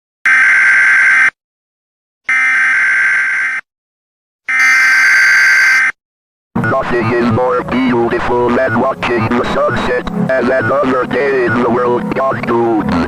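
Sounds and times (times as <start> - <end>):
harsh alarm buzz: 2.3 - 3.6, 4.5 - 6.0.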